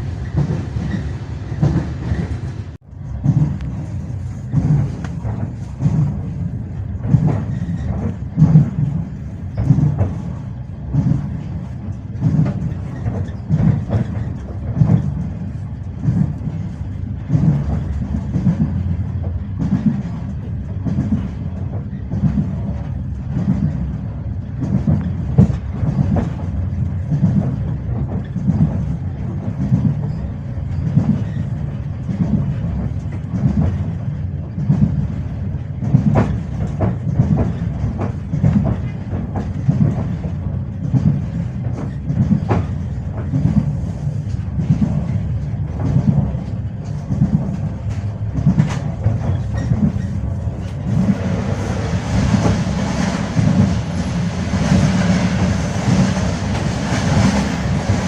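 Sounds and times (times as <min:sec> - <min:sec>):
train low rumble: 0:00.0 - 0:58.0
train wheels clacking over rail joints: 0:00.0 - 0:58.0.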